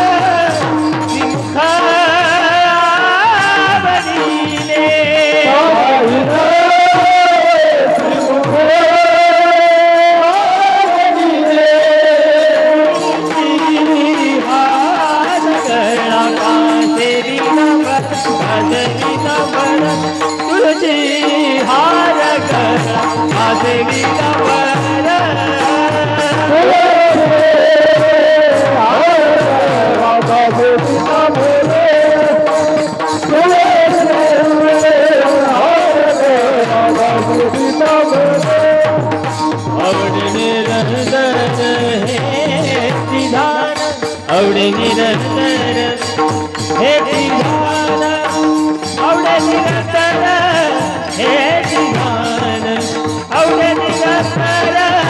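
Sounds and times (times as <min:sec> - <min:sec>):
hand percussion: 0:00.0 - 0:55.0
person singing devotional song: 0:00.0 - 0:55.0
jingling strokes: 0:12.6 - 0:55.0.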